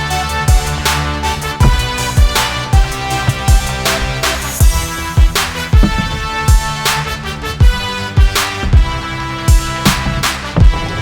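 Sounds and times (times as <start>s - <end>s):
kick drum beat: 0.4s - 11.0s
snare hits: 0.6s - 7.3s, 9.6s - 11.0s.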